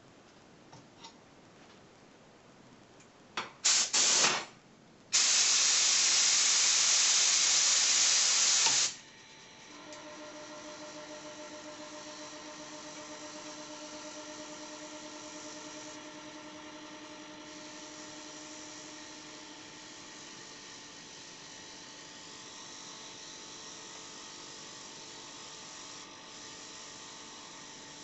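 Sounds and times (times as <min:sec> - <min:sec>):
air compressor humming: 0:03.6 - 0:04.5, 0:05.1 - 0:09.0.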